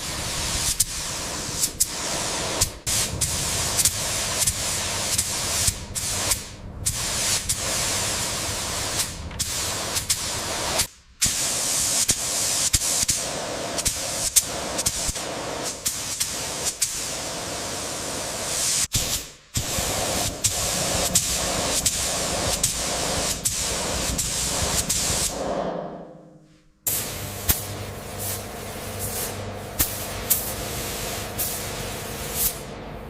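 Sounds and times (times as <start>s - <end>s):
spray gun hissing: 0.0s - 25.4s, 26.9s - 32.7s.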